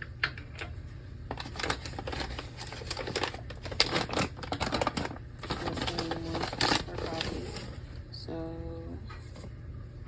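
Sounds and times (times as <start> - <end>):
coffee bag crinkling: 1.3 - 8.0.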